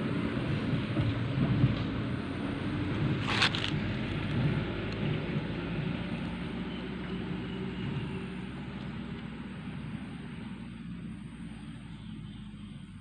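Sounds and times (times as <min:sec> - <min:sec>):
engine drone: 0:00.0 - 0:13.0.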